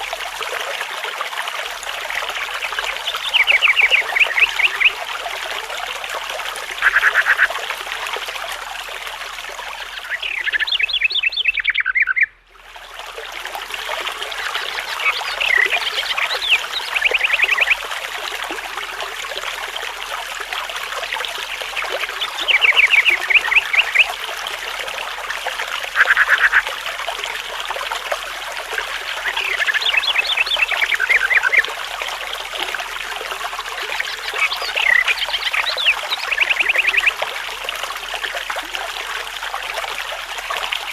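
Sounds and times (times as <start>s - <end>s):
flowing water rushing: 0.0s - 40.9s
birds trilling: 6.8s - 7.5s.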